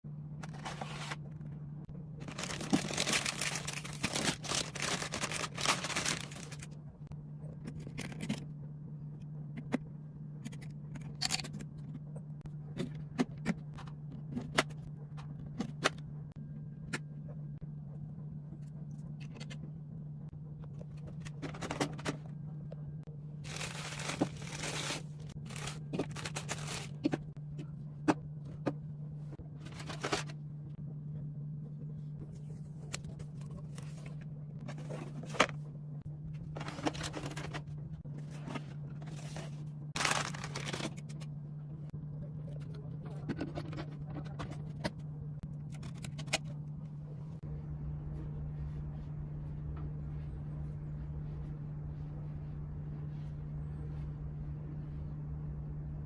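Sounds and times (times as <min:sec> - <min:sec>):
steady low hum: 0:00.0 - 0:56.0
packaging rustling and crinkling: 0:02.2 - 0:06.7, 0:23.4 - 0:27.1, 0:29.6 - 0:30.3, 0:36.5 - 0:37.7, 0:38.3 - 0:41.1.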